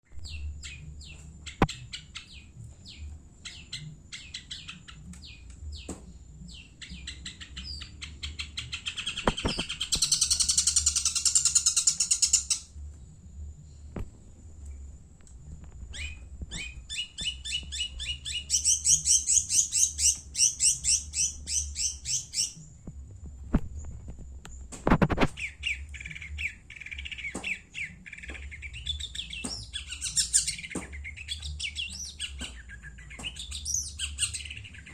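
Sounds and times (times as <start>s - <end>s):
sharp bird calls: 6.5s - 12.7s, 15.9s - 22.6s, 25.3s - 34.9s
shrike singing: 6.5s - 12.7s
bird chattering notes: 6.8s - 12.7s.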